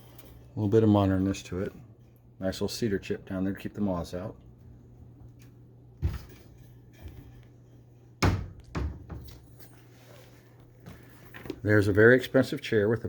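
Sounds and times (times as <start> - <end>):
closet doors knocking shut: 8.2 - 9.4.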